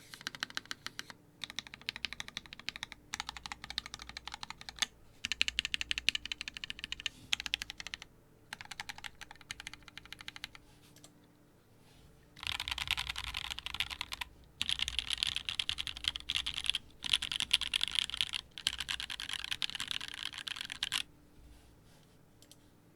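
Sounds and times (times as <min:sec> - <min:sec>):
mechanical keyboard typing: 0:00.0 - 0:10.6, 0:12.4 - 0:21.1.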